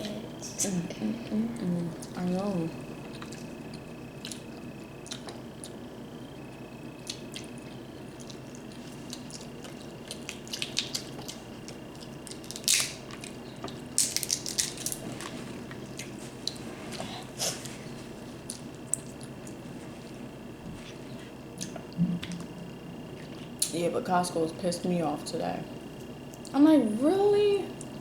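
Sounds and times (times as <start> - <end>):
wet squishing and chewing: 3.0 - 5.8, 7.0 - 17.0, 18.3 - 23.7
sharp cracks and clicks: 12.3 - 13.4, 14.0 - 15.0.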